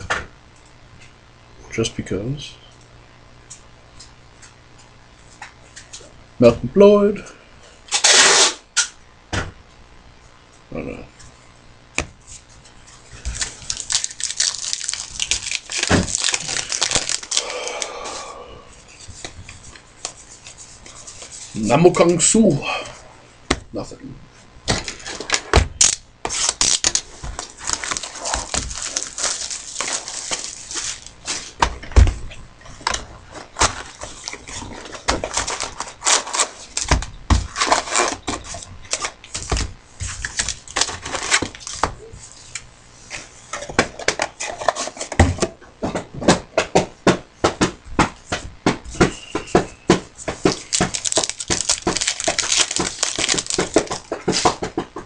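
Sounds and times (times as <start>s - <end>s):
foil wrappers tearing and crinkling: 7.9s - 8.6s, 13.1s - 18.0s, 24.7s - 31.6s, 32.8s - 42.6s, 50.1s - 54.7s.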